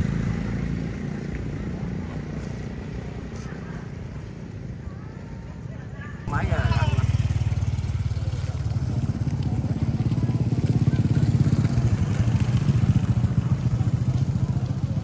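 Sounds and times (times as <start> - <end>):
small engine running: 6.3 - 15.0.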